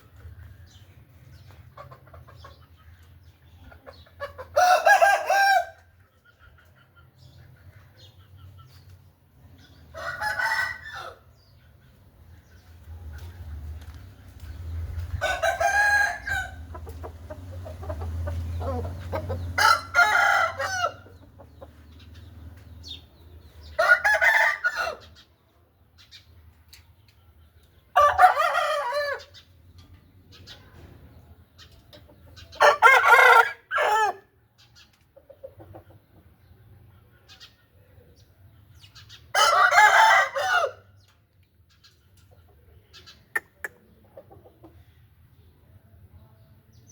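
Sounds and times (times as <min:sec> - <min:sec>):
roosters crowing: 0:04.5 - 0:05.9, 0:09.9 - 0:11.4, 0:15.2 - 0:21.3, 0:23.6 - 0:25.2, 0:27.9 - 0:29.4, 0:32.6 - 0:34.3, 0:39.3 - 0:41.0.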